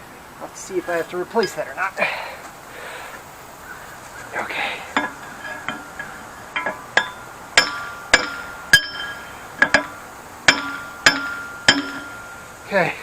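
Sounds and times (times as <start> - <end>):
hammer striking steel: 4.9 - 12.6.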